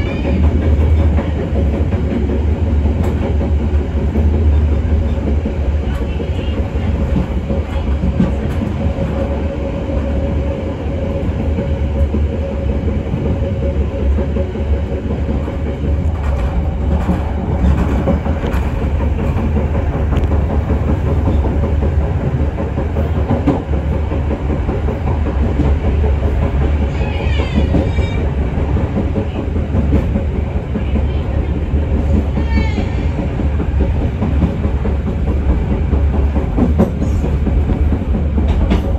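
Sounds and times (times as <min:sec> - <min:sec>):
high train squeals: 0:00.0 - 0:01.5, 0:21.1 - 0:21.8, 0:26.6 - 0:28.6, 0:30.6 - 0:33.4
train rumbling with clattering wheels: 0:00.0 - 0:38.9.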